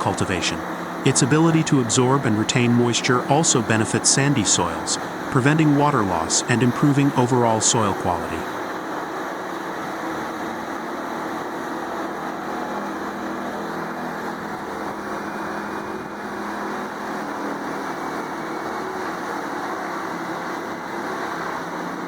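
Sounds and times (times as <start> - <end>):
wood chipper running: 8.4 - 22.0.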